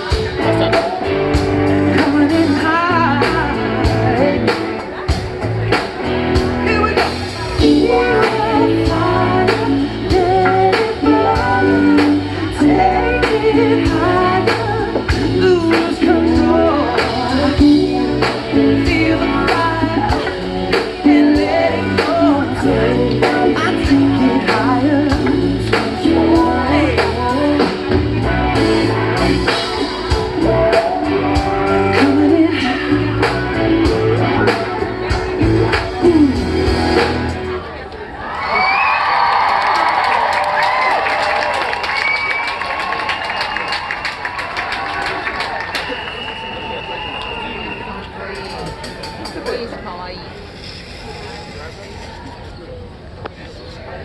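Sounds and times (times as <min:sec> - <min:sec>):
man singing: 0:00.0 - 0:05.2, 0:06.6 - 0:37.5
steady drum beat: 0:00.0 - 0:37.6
live rock band playing: 0:00.0 - 0:37.9.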